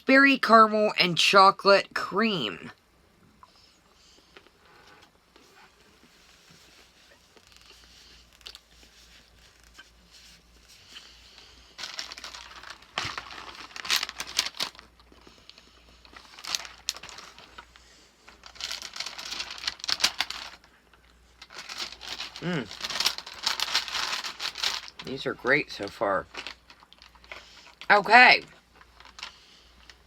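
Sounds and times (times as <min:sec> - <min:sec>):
plastic packaging crinkling: 0:06.1 - 0:28.0, 0:28.6 - 0:30.0.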